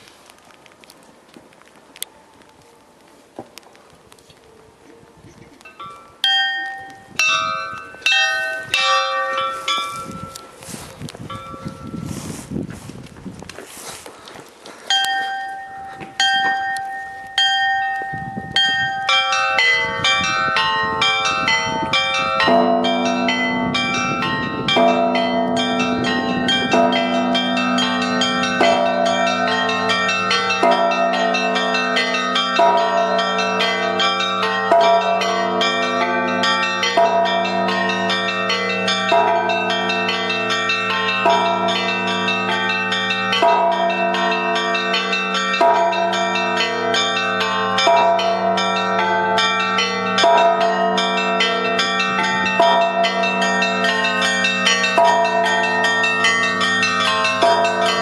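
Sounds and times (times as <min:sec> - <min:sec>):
hum of larger bells: 0:05.6 - 0:12.4, 0:14.9 - 0:58.0
heavy bell strikes: 0:05.8 - 0:10.4, 0:14.9 - 0:58.0
small bells chiming rapidly: 0:14.9 - 0:58.0.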